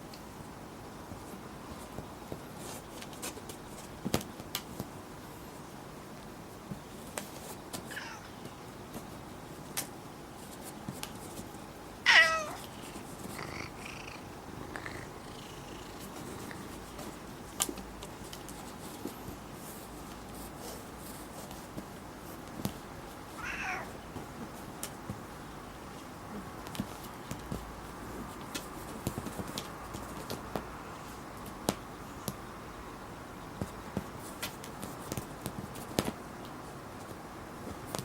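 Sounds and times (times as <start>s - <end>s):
faint clicks and taps: 6.2s - 11.6s, 25.9s - 30.7s, 31.4s - 32.4s, 33.6s - 38.0s
cat meowing: 7.9s - 8.3s, 12.0s - 12.7s, 23.4s - 23.9s.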